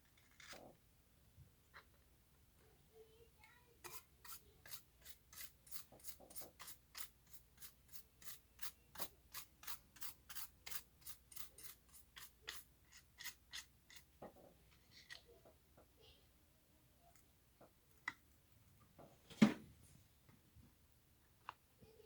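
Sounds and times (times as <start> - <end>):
small brush rubbing strokes: 3.8 - 14.0.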